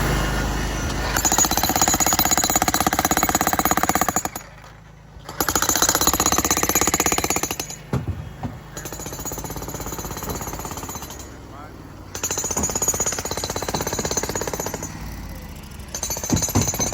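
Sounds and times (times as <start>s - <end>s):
demolition hammer on concrete: 0.9s - 11.5s, 12.1s - 16.9s
separate knocks: 7.9s - 8.8s, 16.2s - 16.9s.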